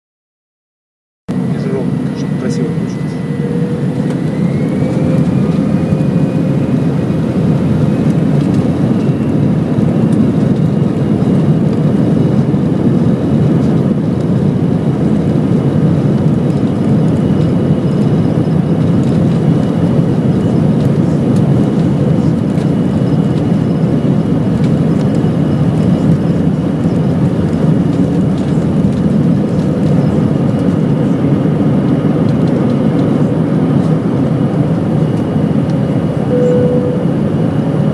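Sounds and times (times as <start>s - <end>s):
faint high whine: 1.3s - 7.0s, 36.2s - 37.7s
vehicle driving drone: 1.3s - 37.9s.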